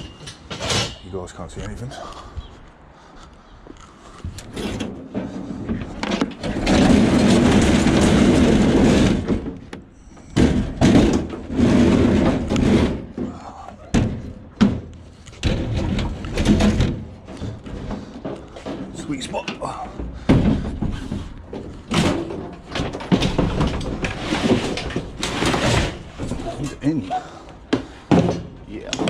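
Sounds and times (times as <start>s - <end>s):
scrap metal scraping and dragging: 4.4s - 13.7s, 15.0s - 28.4s
metal knocks and bangs: 4.4s - 29.0s.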